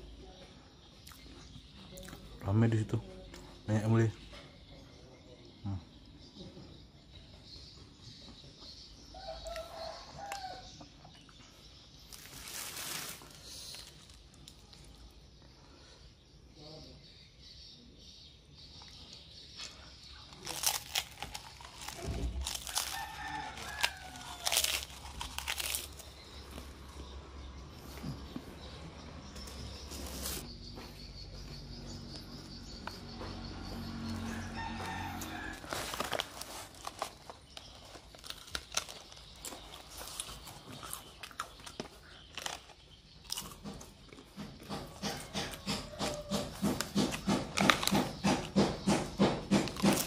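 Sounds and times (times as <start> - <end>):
rooster crowing: 9.2 - 10.8, 21.8 - 25.8, 33.6 - 36.4, 45.0 - 46.9
crinkling and scraping noise: 12.0 - 14.8, 20.4 - 26.7, 29.4 - 30.5, 34.8 - 41.2
utensils clicking and crunching: 12.1 - 15.0, 19.6 - 26.8, 33.9 - 50.0.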